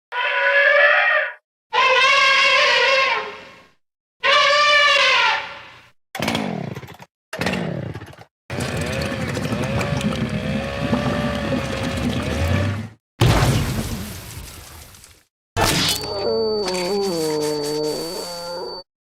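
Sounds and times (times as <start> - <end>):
cartoon effects falling in pitch: 15.6 - 18.8
wavering cartoon tone: 15.8 - 18.9
motor-like buzz with whine: 16.0 - 18.9.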